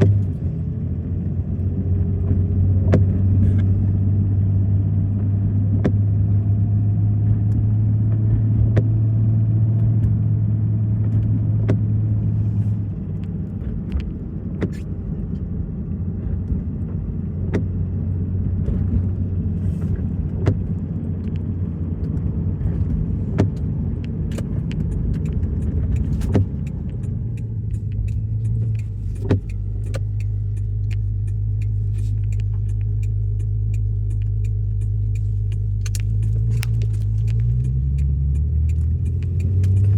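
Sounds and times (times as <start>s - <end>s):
car road and engine rumble: 0.0s - 39.9s
sharp ticks: 23.4s - 39.9s.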